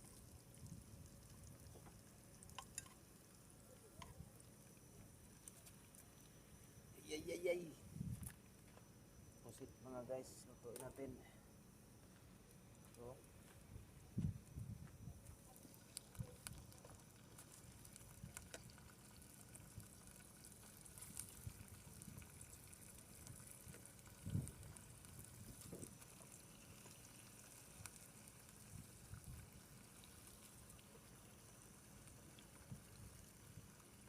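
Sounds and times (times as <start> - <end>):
squid sizzling: 0.0 - 8.4, 15.2 - 34.0.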